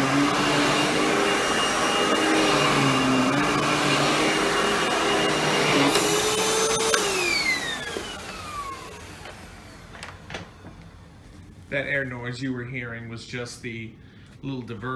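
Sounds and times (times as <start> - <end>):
motor winding down whine: 0.0 - 11.6
upright vacuum running: 0.0 - 11.7.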